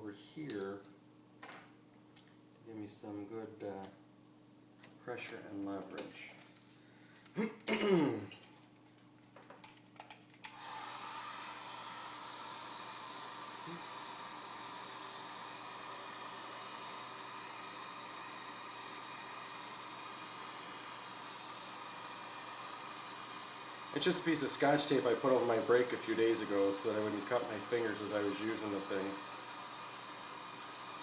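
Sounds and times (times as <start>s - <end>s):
hot-air blower hissing: 10.4s - 31.0s.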